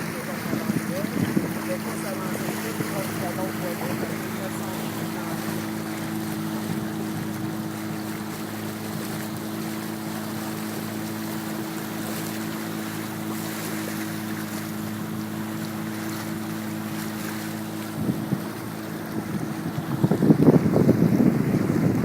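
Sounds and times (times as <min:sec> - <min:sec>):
outboard motor humming: 0:00.0 - 0:22.0
water noise: 0:00.0 - 0:22.0
wind: 0:00.0 - 0:22.0.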